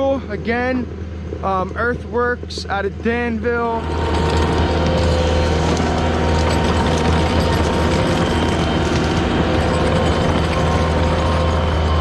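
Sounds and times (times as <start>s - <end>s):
loader diesel engine droning: 0.0s - 12.0s
mechanical rattle: 3.7s - 12.0s.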